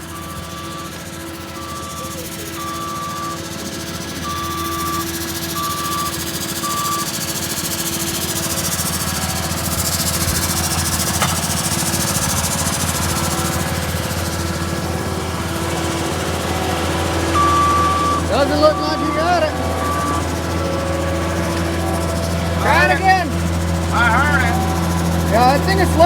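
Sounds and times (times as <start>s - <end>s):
auger engine running under load: 0.0s - 26.0s
short beeps: 17.3s - 20.3s.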